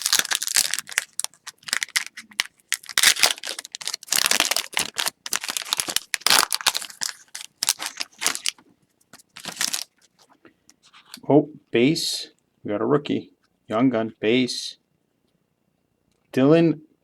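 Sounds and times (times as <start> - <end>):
cards crackling: 0.0 - 8.6, 9.2 - 10.0
plastic wrapper crinkling and tearing: 0.0 - 10.3.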